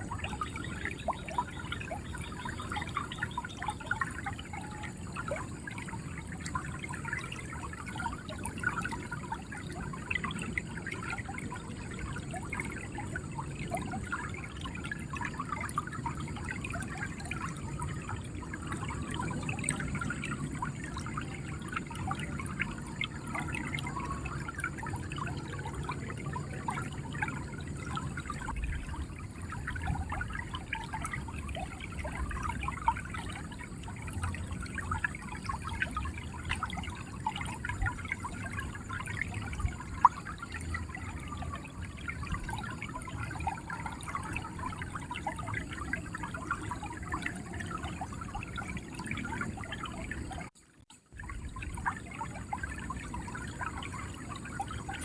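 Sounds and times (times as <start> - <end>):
river water gurgling over stones: 0.0 - 55.0.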